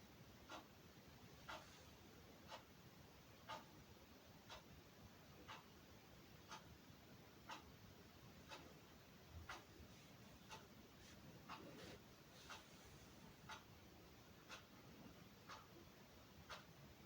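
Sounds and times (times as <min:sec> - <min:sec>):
faint regular ticking: 0:00.3 - 0:17.0.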